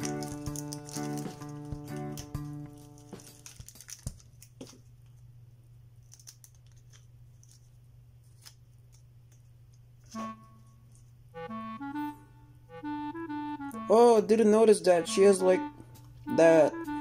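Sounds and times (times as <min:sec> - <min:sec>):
packaging rustling: 0:00.0 - 0:05.2, 0:06.0 - 0:10.3
low steady hum: 0:00.0 - 0:17.0.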